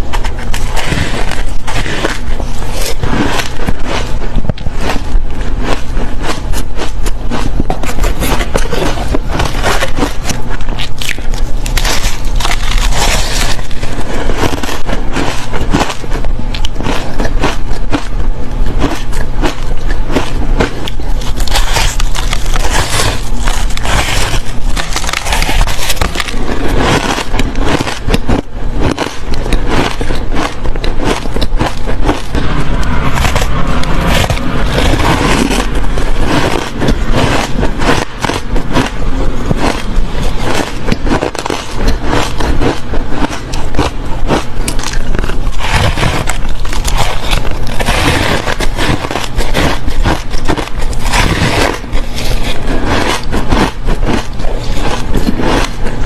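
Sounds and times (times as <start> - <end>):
chewing ice crunches: 0.0 - 56.0.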